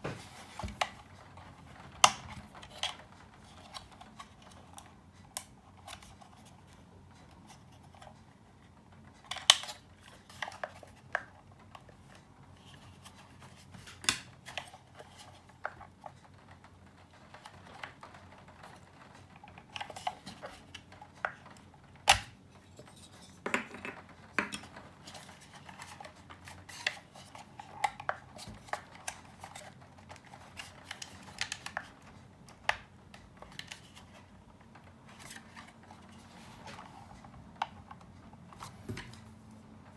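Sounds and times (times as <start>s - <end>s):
tools clicking and scraping plastic: 0.2s - 39.5s.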